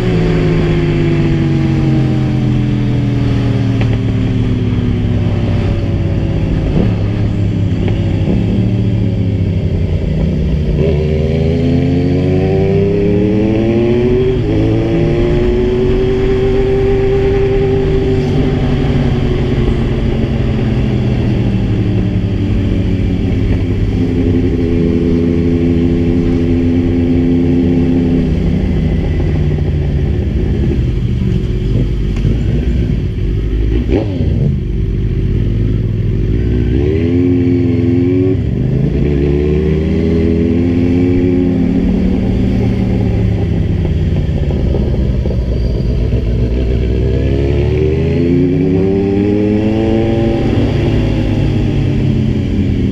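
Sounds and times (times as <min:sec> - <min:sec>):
motorcycle engine revving: 0:00.0 - 0:52.9.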